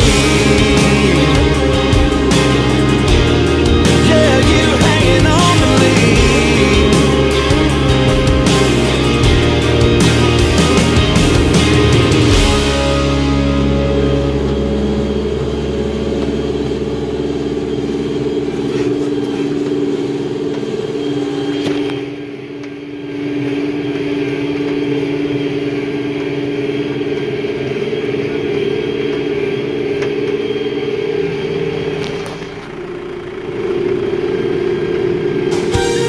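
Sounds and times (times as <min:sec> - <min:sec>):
tractor diesel engine running: 0:00.0 - 0:36.0.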